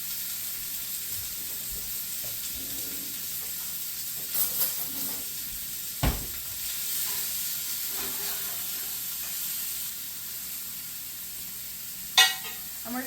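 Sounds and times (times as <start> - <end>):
chicken sizzling in oil: 0.0 - 4.4, 5.0 - 13.0
sharp knock: 6.0 - 6.4.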